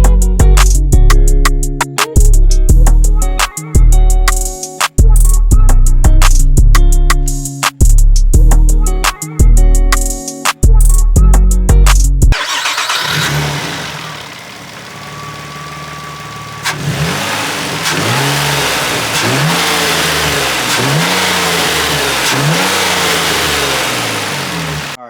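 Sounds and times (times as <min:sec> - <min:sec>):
music: 0:00.0 - 0:12.4
car engine revving: 0:12.4 - 0:25.0.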